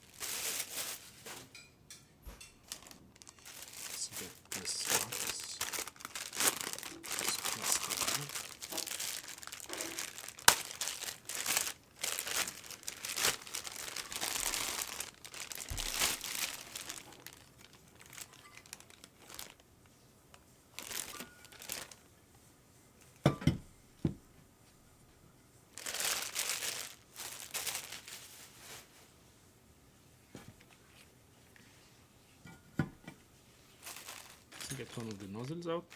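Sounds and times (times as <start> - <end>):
packaging crinkling and tearing: 0.0 - 1.4, 2.6 - 19.6, 20.8 - 22.0, 25.8 - 28.9, 33.8 - 35.9.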